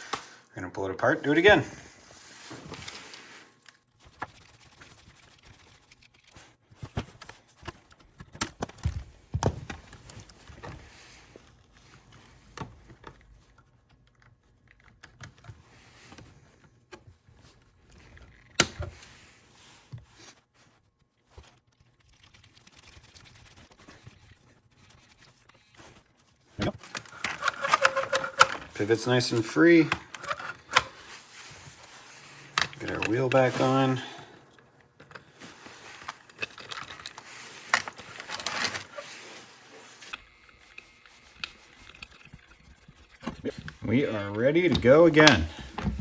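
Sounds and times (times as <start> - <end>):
plastic and metal parts clicking: 26.8 - 28.8, 29.8 - 31.0, 36.0 - 39.1.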